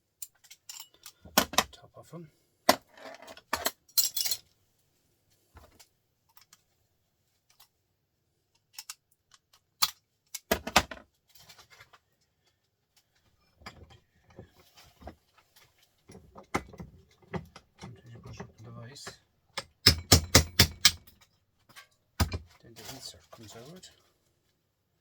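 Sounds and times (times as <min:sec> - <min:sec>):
hand tool clicking on metal: 0:19.0 - 0:21.2.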